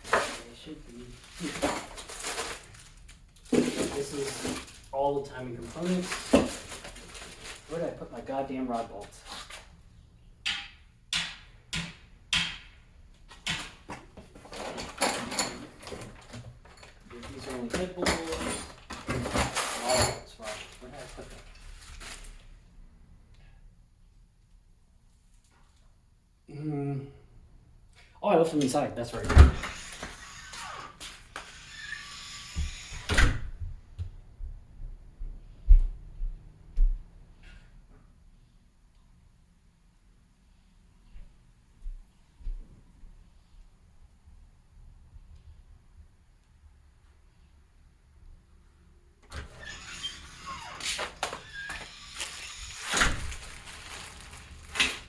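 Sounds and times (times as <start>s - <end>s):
packaging rustling: 0.0s - 8.0s, 20.4s - 22.4s, 51.0s - 55.0s
door opening and shutting: 29.2s - 33.6s, 49.2s - 55.0s.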